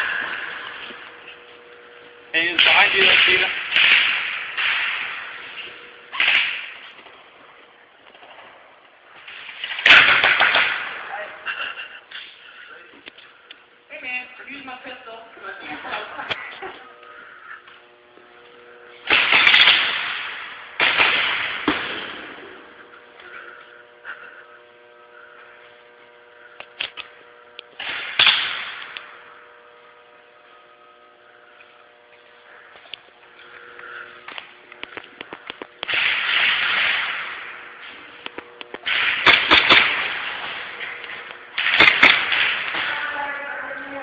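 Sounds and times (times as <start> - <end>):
electrical hum: 0.0 - 44.0
bursts of rushing noise: 35.8 - 43.0.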